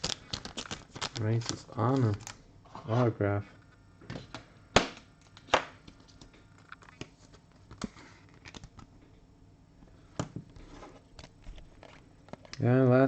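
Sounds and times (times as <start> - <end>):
cards ticking and rustling: 0.0 - 2.4, 6.0 - 8.9.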